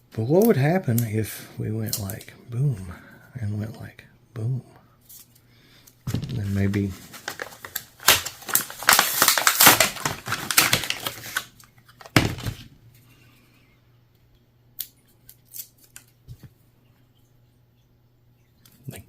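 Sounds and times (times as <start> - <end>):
handling rustling and clicking: 6.1 - 12.6.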